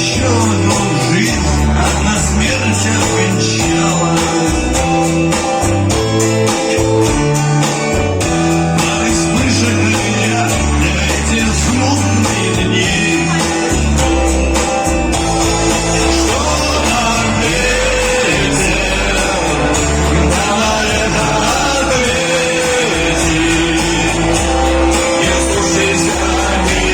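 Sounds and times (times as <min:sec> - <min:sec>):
person singing: 0:00.0 - 0:06.5, 0:08.5 - 0:26.9
bass line: 0:00.0 - 0:26.9
rock guitar: 0:00.0 - 0:26.9
drum hits: 0:15.2 - 0:26.9.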